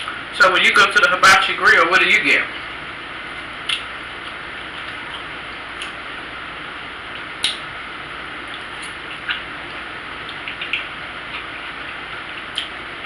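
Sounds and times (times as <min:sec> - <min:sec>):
wet mouth chewing smacks: 0:03.6 - 0:06.0, 0:07.1 - 0:07.7, 0:08.4 - 0:12.8.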